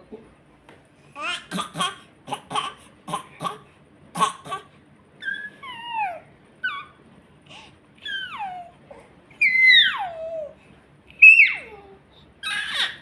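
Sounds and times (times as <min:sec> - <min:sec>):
animal cough-like cries: 0:01.5 - 0:04.7
animal long high-pitched cries: 0:09.4 - 0:10.6, 0:11.2 - 0:11.7, 0:12.4 - 0:13.0.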